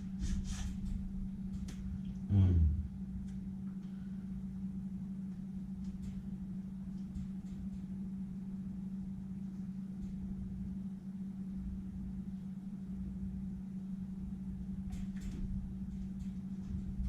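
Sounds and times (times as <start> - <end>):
low motor hum: 0.9 - 14.8.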